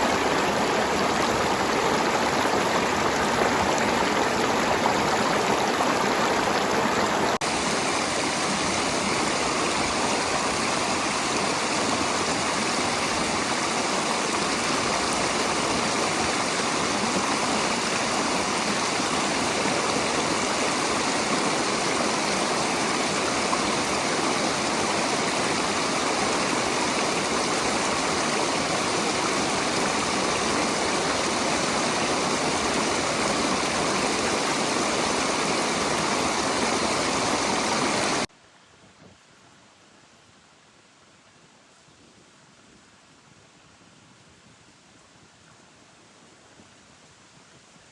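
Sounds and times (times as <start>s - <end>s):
stream water babbling: 0.0s - 38.3s.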